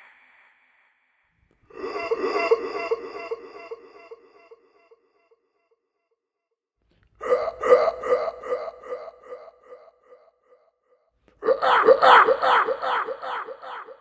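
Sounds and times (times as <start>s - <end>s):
pulsing voice-like scary sound: 1.7s - 4.7s, 7.2s - 10.2s, 11.4s - 14.0s.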